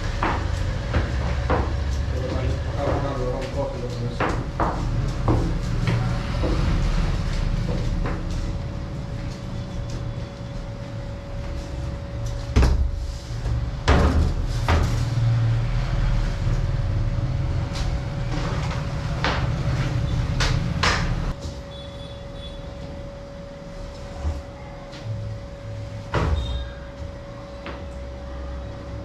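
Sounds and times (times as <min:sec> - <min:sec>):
sharp knocks and clunks: 0:00.2 - 0:03.3.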